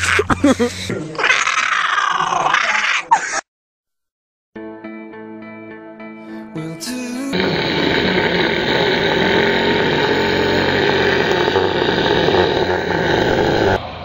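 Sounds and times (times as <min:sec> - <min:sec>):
harsh sustained vocal noise: 0:06.6 - 0:13.8.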